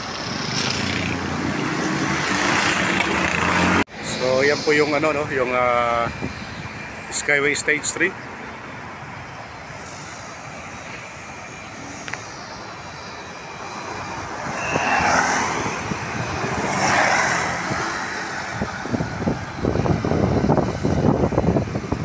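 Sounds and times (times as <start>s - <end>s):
traffic noise: 0.0s - 22.0s
vehicles passing: 0.0s - 22.0s
wind buffeting microphone: 4.1s - 7.4s, 8.8s - 22.0s.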